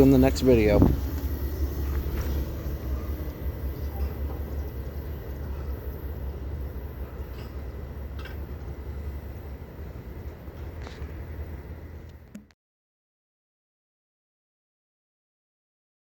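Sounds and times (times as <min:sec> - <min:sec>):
freight train rumbling: 0:00.0 - 0:12.4.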